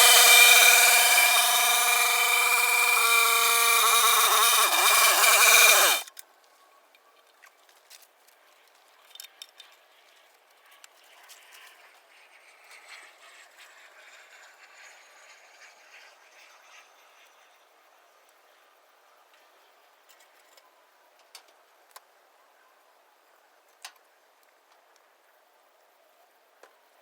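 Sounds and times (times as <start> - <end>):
small petrol engine running fast: 0.0 - 6.0.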